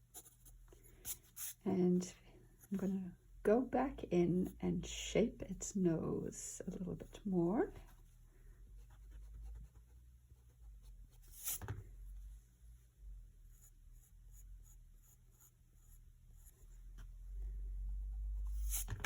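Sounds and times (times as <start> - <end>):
pencil scratching on paper: 0.0 - 1.6, 8.8 - 11.7, 13.4 - 17.1, 18.0 - 19.0.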